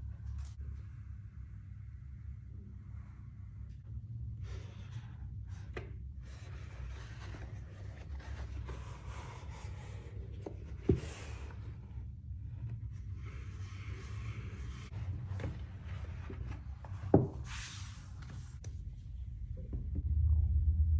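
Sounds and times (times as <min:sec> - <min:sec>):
steady low hum: 0:00.0 - 0:20.9
items rustling and scraping: 0:04.5 - 0:12.0, 0:12.6 - 0:18.7.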